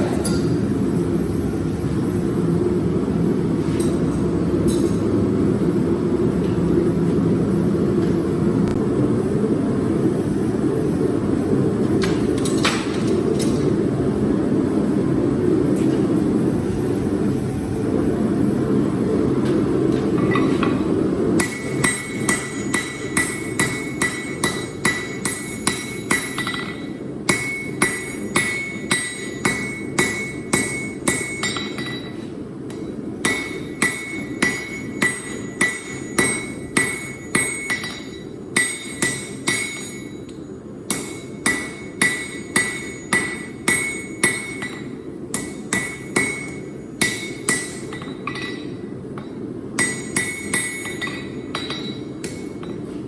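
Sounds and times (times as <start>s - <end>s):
hammer ringing on anvil: 21.4s - 53.0s.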